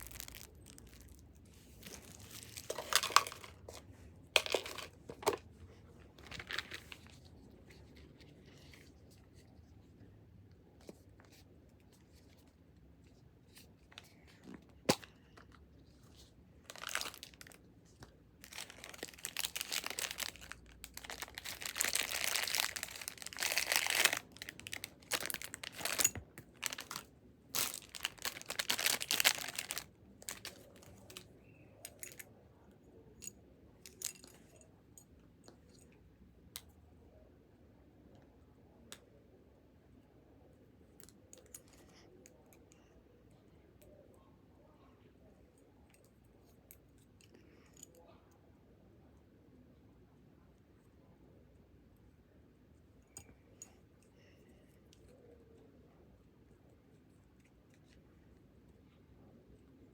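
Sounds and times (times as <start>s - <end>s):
wrapper tearing and crinkling: 0.0s - 3.6s, 16.7s - 17.6s, 18.4s - 31.2s.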